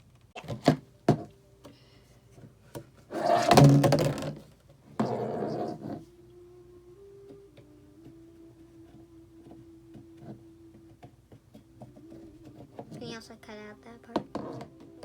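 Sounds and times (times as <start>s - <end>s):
plastic scraping: 3.1s - 6.0s.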